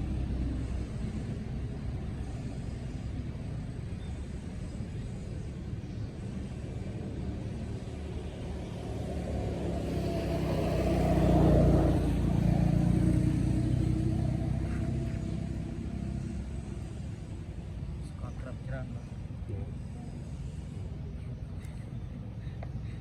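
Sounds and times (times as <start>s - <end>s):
vehicle engine passing by: 6.4s - 21.0s.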